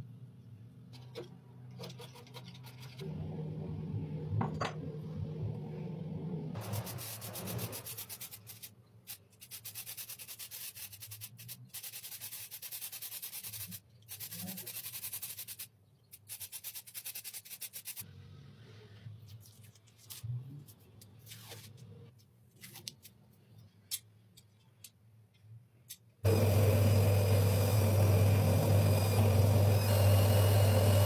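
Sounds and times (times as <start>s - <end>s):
abrasive sanding on steel: 6.6s - 15.7s
small electric motor humming: 26.2s - 31.0s.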